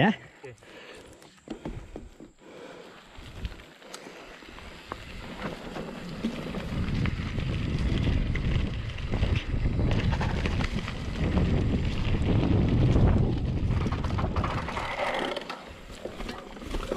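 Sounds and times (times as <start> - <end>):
bike tyres rolling on dirt: 0.6 - 16.9
bike frame rattling and clicking: 4.9 - 16.9
wind buffeting microphone: 5.0 - 15.0.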